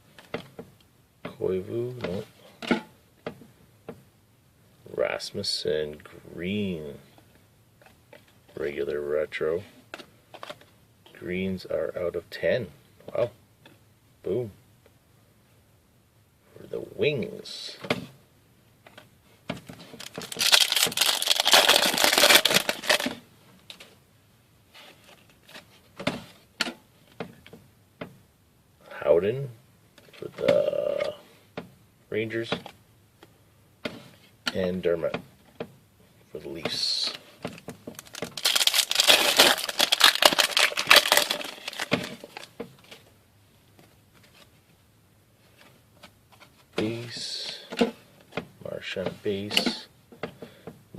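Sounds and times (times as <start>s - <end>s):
card pack wrapper crinkling: 20.0s - 23.2s, 37.9s - 42.5s.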